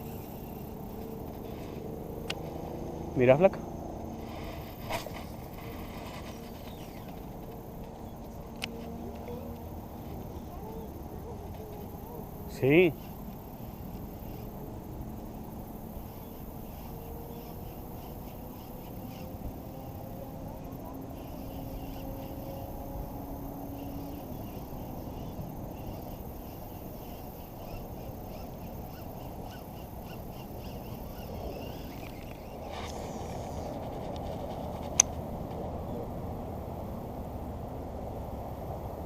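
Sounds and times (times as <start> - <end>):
low outdoor rumble: 0.0 - 39.0
sharp click: 34.1 - 35.2.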